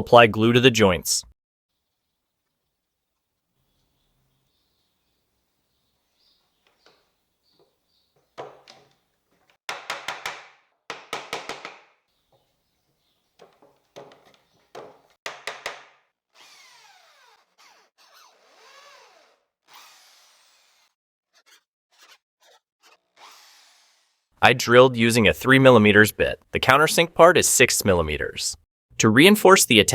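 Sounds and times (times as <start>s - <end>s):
power drill drilling into wood: 16.3s - 21.0s, 22.8s - 24.3s.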